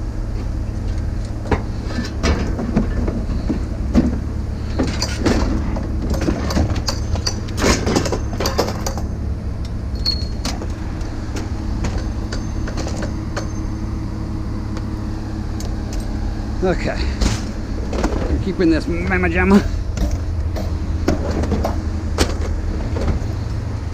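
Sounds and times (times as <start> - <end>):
vehicle engine idling: 0.0 - 23.9
scrap metal clanking: 1.6 - 9.1.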